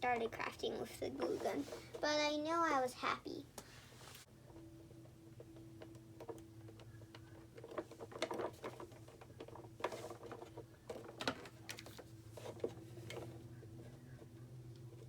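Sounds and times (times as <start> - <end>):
plastic pieces clicking and rustling: 4.9 - 13.4.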